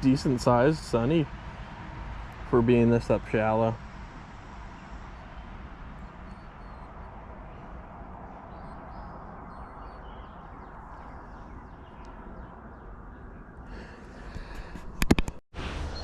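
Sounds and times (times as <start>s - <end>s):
faint bird chirps: 5.3s - 13.6s.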